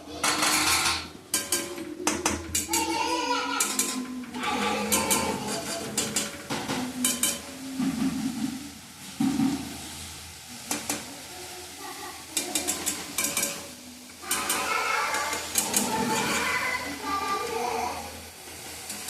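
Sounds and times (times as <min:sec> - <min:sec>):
food sizzling: 0:00.0 - 0:19.0
metal clicks against pan: 0:00.2 - 0:02.9, 0:03.6 - 0:07.5, 0:10.7 - 0:11.1, 0:12.3 - 0:16.5
utensil scraping a pan: 0:00.2 - 0:10.0, 0:12.2 - 0:19.0.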